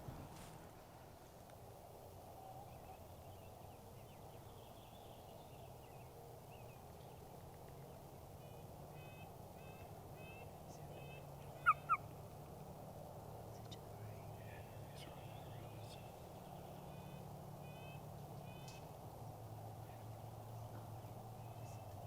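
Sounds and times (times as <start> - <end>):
songbirds singing: 2.1 - 22.0
turkey yelps: 11.5 - 12.1.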